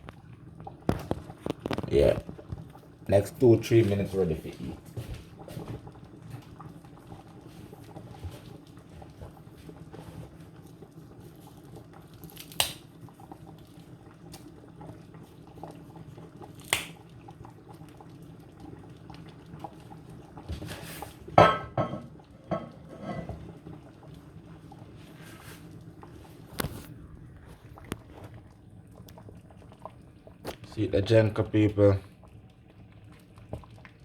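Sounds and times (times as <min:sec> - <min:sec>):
soup bubbling in pot: 0:00.0 - 0:34.0
kitchenware clinking against pot: 0:21.4 - 0:23.4.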